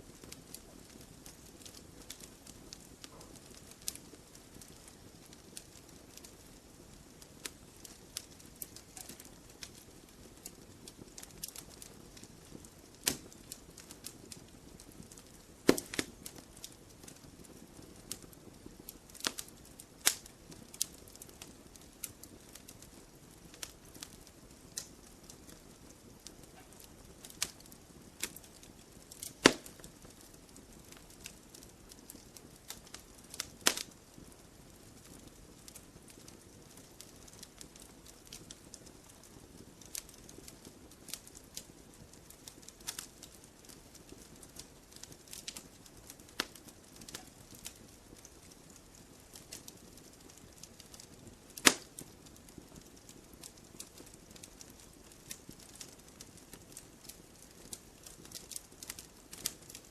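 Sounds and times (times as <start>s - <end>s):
campfire crackling and popping: 0.0s - 59.9s
fire hiss: 7.1s - 25.5s, 26.1s - 34.0s, 51.5s - 52.2s.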